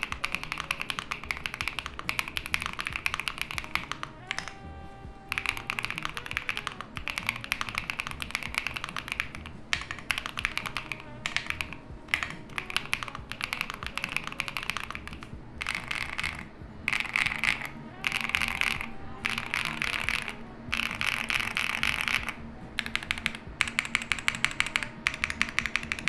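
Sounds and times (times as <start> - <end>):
mechanical keyboard typing: 0.0 - 26.0.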